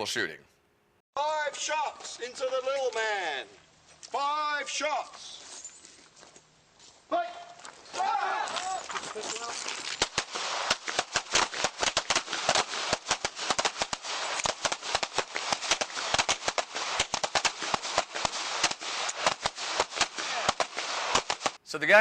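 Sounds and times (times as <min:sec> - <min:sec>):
rapid gunfire: 0:10.0 - 0:21.6.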